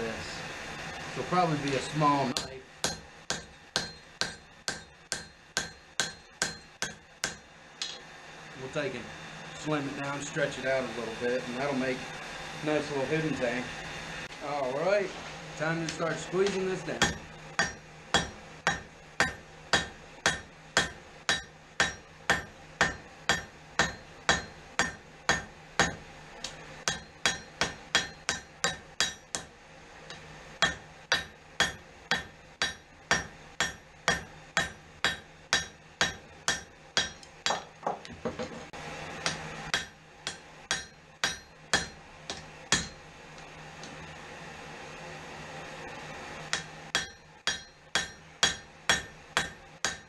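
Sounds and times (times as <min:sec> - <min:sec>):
hammer striking hot steel on anvil: 0:01.6 - 0:08.1, 0:15.8 - 0:44.0, 0:46.4 - 0:50.0.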